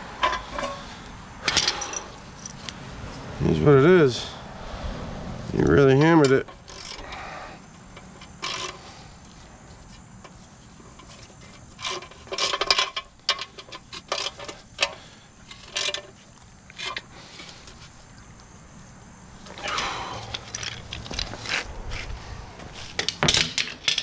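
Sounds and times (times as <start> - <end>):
metal tools clinking: 0.2 - 2.7, 5.8 - 7.2, 7.8 - 9.0, 10.2 - 17.9, 19.5 - 21.6, 23.0 - 24.0.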